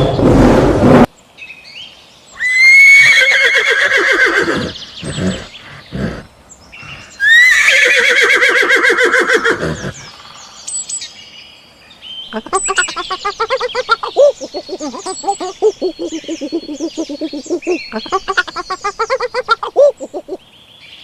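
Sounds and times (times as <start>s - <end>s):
horse whinnying: 2.4s - 6.3s, 7.2s - 10.0s.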